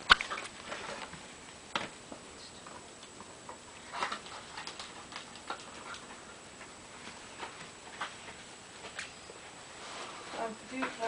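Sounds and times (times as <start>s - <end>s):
bedding rustling: 3.8s - 11.0s.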